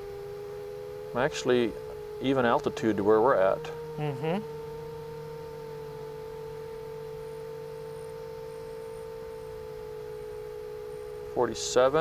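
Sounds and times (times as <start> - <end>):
steady humming tone: 0.0 - 12.0.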